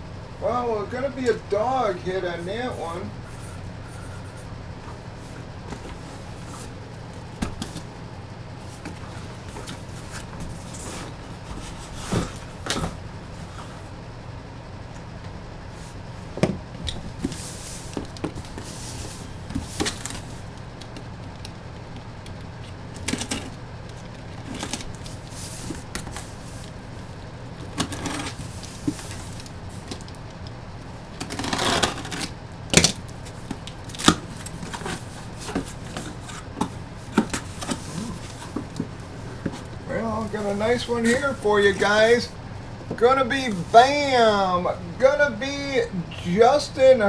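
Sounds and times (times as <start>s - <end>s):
steady low hum: 0.0s - 47.0s
packaging rustling: 0.4s - 14.0s, 15.7s - 43.8s
clicks and taps of unpacking: 5.7s - 7.9s, 16.4s - 39.8s.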